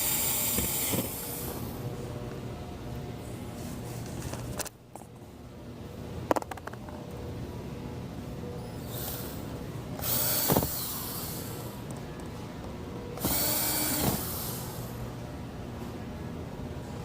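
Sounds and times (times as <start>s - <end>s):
power driver driving screws: 0.0s - 1.5s, 10.0s - 11.5s, 13.2s - 14.6s.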